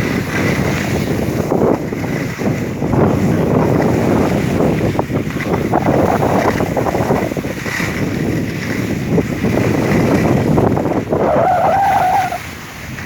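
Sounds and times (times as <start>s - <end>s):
skis scraping over snow: 0.0s - 13.0s
wind buffeting microphone: 0.0s - 13.0s.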